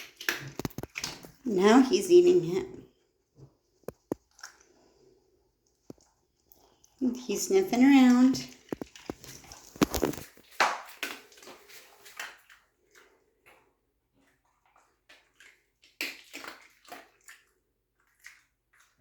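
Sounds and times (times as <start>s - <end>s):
dog licking and smacking: 8.5s - 19.0s.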